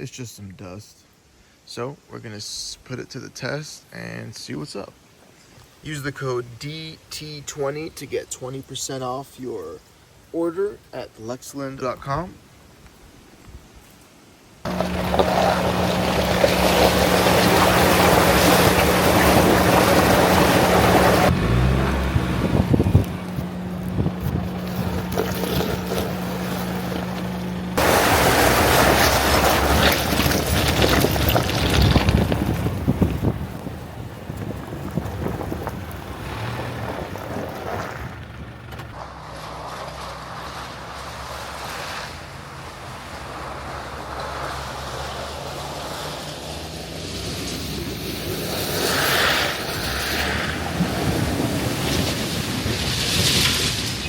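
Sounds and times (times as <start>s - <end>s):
tyres on gravel: 14.6s - 54.0s
low engine drone: 14.7s - 29.8s
truck engine hum: 14.7s - 54.0s
clicks of small stones: 28.6s - 33.2s.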